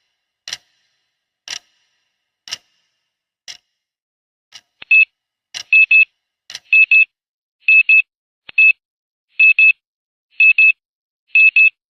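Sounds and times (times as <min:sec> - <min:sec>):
clock ticking: 0:00.0 - 0:03.9, 0:04.5 - 0:07.1
timer alarm beeping: 0:04.8 - 0:07.1.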